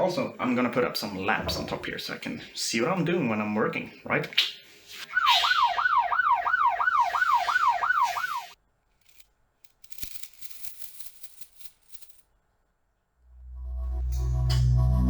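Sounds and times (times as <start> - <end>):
electronic siren wail: 5.1 - 8.6.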